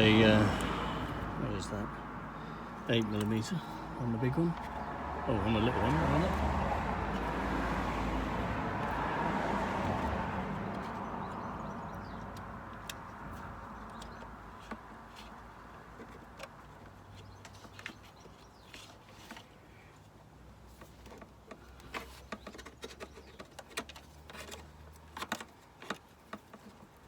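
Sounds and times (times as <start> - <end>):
vehicle passing: 0.0 - 13.9.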